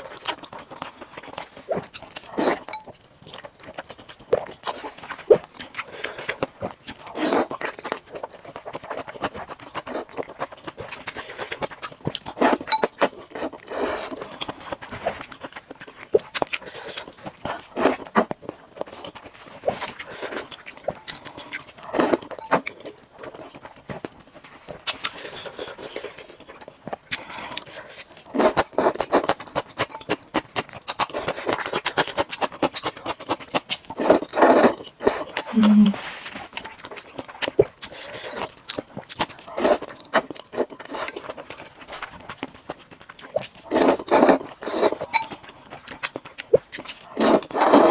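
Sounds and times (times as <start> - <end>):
chewing with wet smacks: 0.0 - 35.8, 36.4 - 47.9
person slurping noodles: 33.9 - 36.3, 39.6 - 41.2, 43.7 - 45.1, 47.1 - 47.9.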